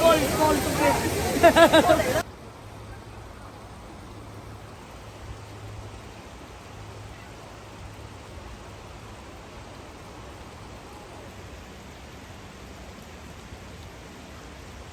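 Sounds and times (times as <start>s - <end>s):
waterfall rushing: 0.0s - 2.2s.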